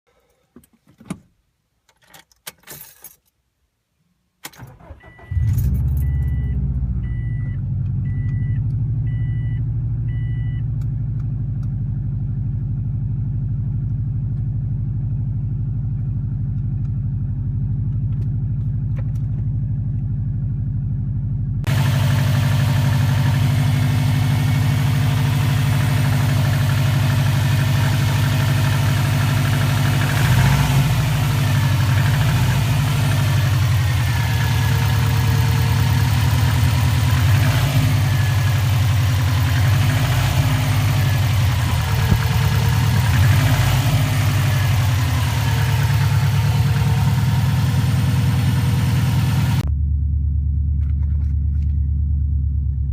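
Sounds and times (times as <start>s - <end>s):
keys jangling: 2.0s - 3.4s
car engine starting and idling: 4.4s - 52.9s.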